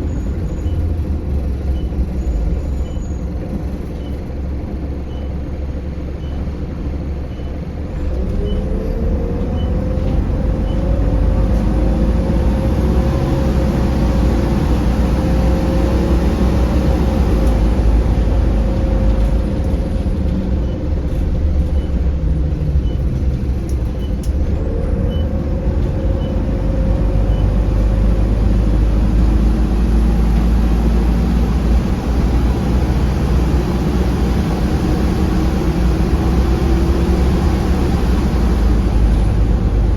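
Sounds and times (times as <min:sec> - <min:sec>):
bus engine and drive whine: 0:00.0 - 0:39.9.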